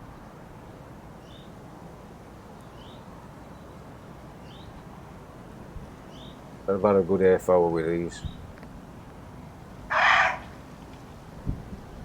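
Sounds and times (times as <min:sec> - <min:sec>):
steady outdoor hiss: 0:00.0 - 0:12.0
small bird chirping: 0:02.6 - 0:03.8, 0:04.4 - 0:04.8, 0:06.1 - 0:06.4.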